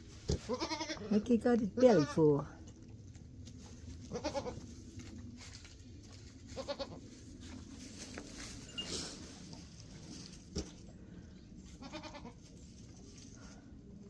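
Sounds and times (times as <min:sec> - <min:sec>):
goat bleating: 0:00.3 - 0:01.2, 0:01.8 - 0:02.4, 0:04.1 - 0:04.6, 0:06.6 - 0:07.0, 0:11.8 - 0:12.4.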